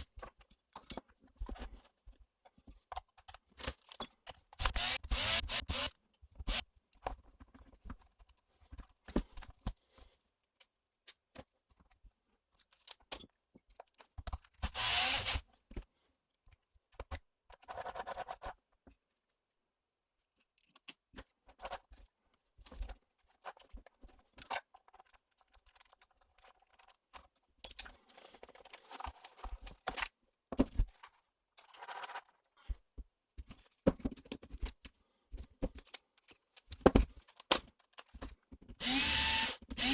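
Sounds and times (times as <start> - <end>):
metal parts and tools clinking: 0.1 - 1.9, 3.2 - 4.7, 12.6 - 14.4.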